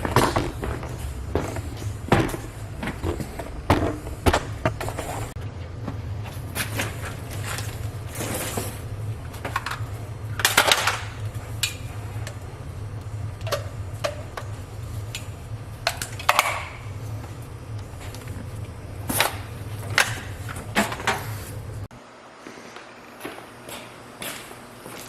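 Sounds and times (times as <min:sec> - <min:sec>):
steady low hum: 0:00.0 - 0:25.0
tools clattering: 0:06.4 - 0:12.4, 0:15.8 - 0:16.9.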